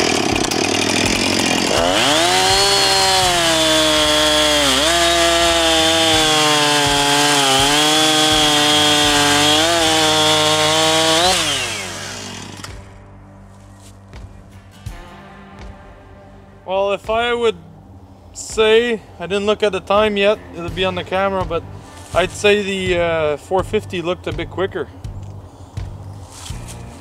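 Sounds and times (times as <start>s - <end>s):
chainsaw cutting through log: 0.0s - 13.0s.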